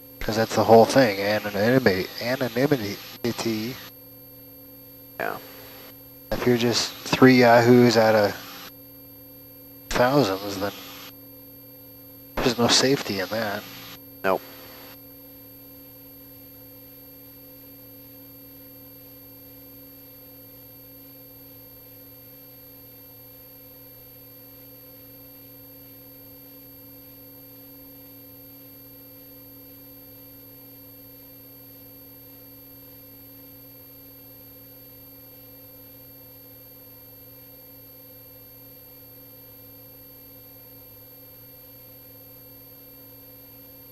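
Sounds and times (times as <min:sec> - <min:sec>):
electrical hum: 0:00.0 - 0:15.4
faint hiss: 0:00.2 - 0:03.8, 0:05.2 - 0:08.7, 0:09.9 - 0:11.1, 0:12.4 - 0:15.0.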